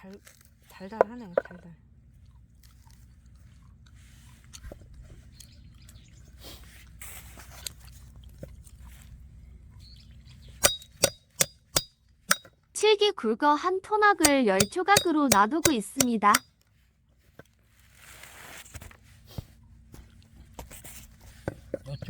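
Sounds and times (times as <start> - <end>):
knife striking root: 10.6 - 12.5, 14.2 - 16.4
soft handling noise: 14.6 - 22.0.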